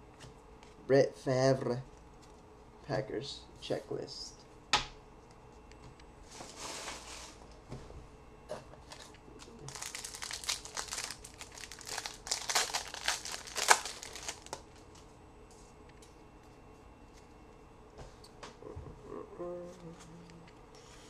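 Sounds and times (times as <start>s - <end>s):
wrapper tearing and crinkling: 8.8s - 14.6s.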